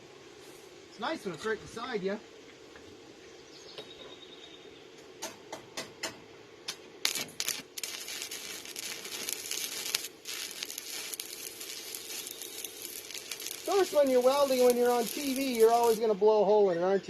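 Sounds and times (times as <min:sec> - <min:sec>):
welding rod striking ticks: 0:07.0 - 0:16.0
welding arc crackling sizzle: 0:07.0 - 0:16.2.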